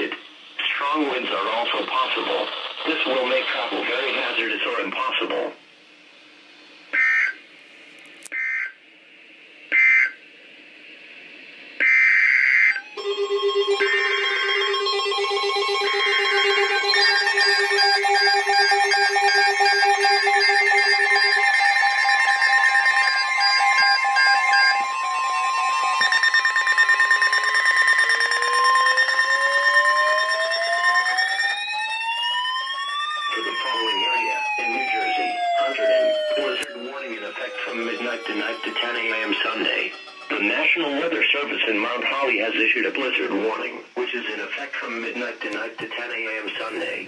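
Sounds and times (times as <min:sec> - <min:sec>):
pulsing electronic alert tone: 0:12.6 - 0:41.3
rising siren-like sweep: 0:12.6 - 0:41.3
raspy two-tone data squawks: 0:25.8 - 0:31.1, 0:36.3 - 0:41.4.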